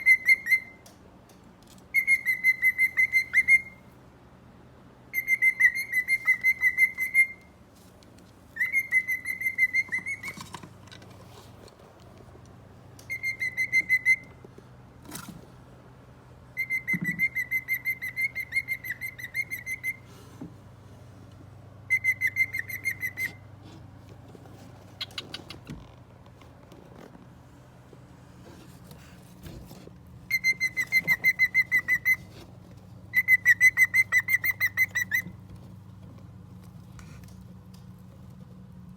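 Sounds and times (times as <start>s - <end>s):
cockatiel whistling: 0.0s - 0.8s, 1.9s - 3.8s, 5.1s - 7.5s, 8.6s - 10.4s, 13.1s - 14.4s, 16.6s - 20.0s, 21.9s - 23.4s, 30.3s - 32.3s, 33.1s - 35.4s.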